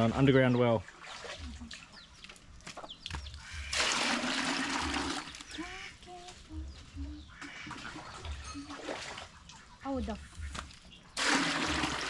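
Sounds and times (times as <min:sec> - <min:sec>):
water gushing from pump spout: 0:03.4 - 0:05.8, 0:11.2 - 0:12.0.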